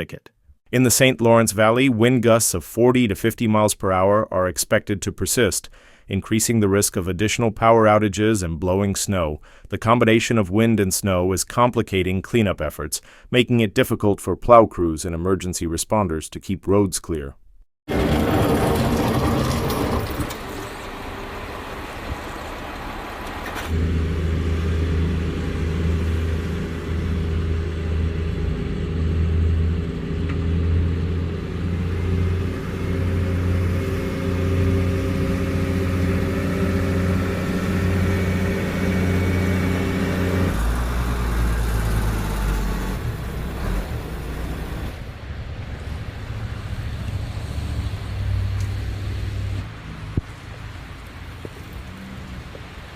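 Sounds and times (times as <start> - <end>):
vehicle engine droning: 17.9 - 52.9.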